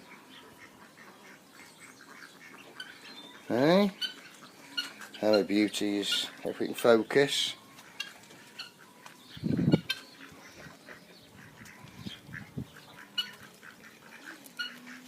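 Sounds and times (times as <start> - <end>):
ducks quacking: 0.0 - 15.0
farmyard birds calling: 0.0 - 15.0.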